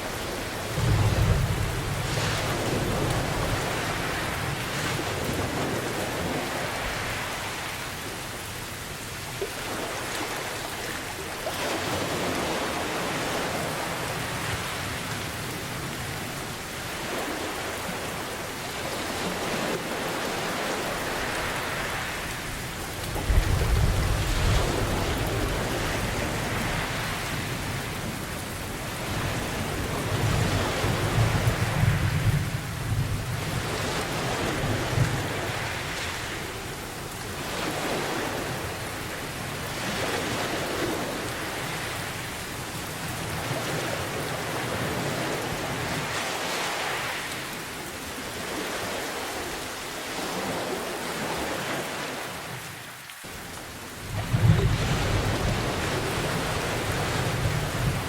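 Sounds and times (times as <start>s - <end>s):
ocean waves washing: 0.0s - 58.0s
steady rain: 0.0s - 58.0s
low thunder rumbling: 0.7s - 4.4s.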